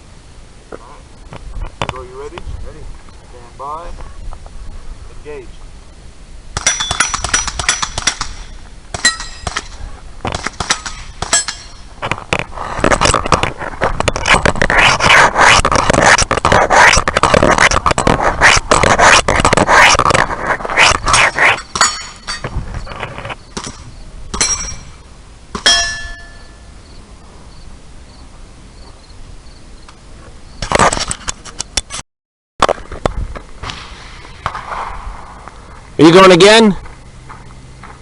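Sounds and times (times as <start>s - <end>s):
gunshots: 6.6s - 11.8s, 23.6s - 24.6s, 33.6s - 35.5s
short metallic ringing: 24.4s - 25.0s, 25.6s - 26.7s.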